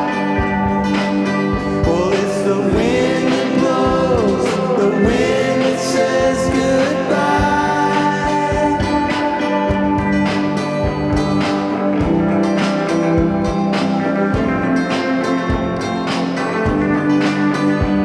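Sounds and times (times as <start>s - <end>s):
live band music: 0.0s - 18.0s.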